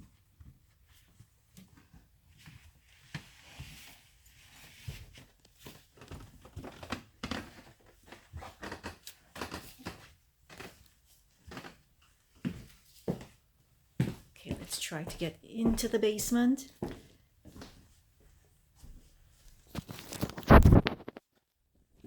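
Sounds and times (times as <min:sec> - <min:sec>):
footsteps going down stairs: 0:04.9 - 0:10.8, 0:11.5 - 0:11.8, 0:12.4 - 0:13.4, 0:14.0 - 0:19.8
clothing rustling: 0:19.0 - 0:21.1.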